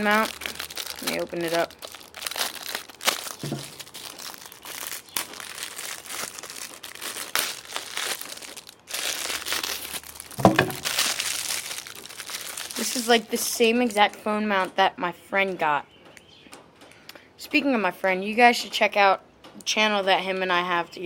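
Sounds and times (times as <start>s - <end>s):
packaging crinkling and rustling: 0.0s - 14.0s.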